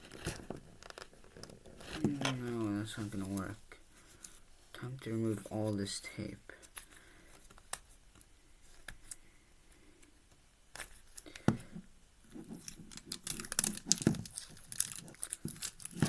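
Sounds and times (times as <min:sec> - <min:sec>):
adhesive tape peeling and tearing: 0:12.5 - 0:16.0.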